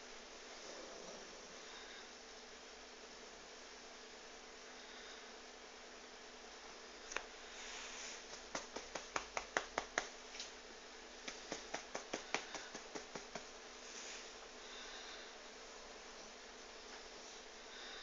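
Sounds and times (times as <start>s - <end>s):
faint hiss: 0.0s - 18.0s
rapid sharp clicks: 8.3s - 10.2s, 11.2s - 13.5s.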